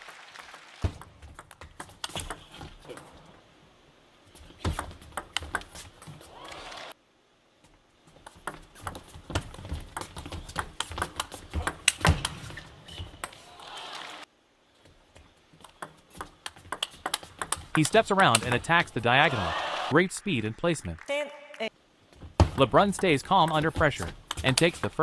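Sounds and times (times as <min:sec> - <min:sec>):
table tennis ball clicking: 0:15.6 - 0:18.7
crowd noise: 0:18.3 - 0:20.8.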